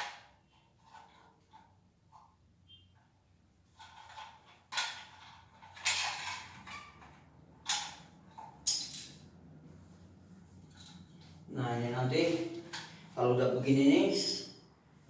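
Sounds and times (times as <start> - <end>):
plastic parts creaking and scraping: 0.0 - 2.4, 3.6 - 8.5.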